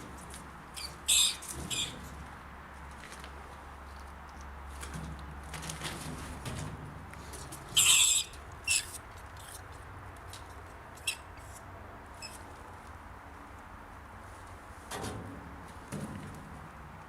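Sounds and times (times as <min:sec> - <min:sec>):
rat squealing: 0:00.8 - 0:02.0, 0:07.8 - 0:09.6.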